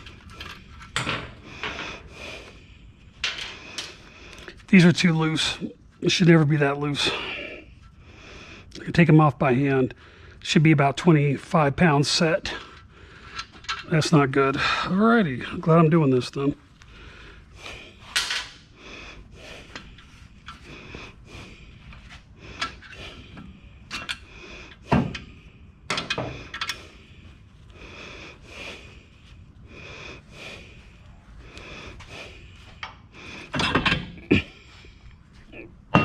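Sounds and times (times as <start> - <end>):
tools and brake parts clattering: 0.0 - 2.1, 3.2 - 4.0, 12.5 - 14.0, 18.1 - 18.6, 21.9 - 26.8, 32.8 - 34.2.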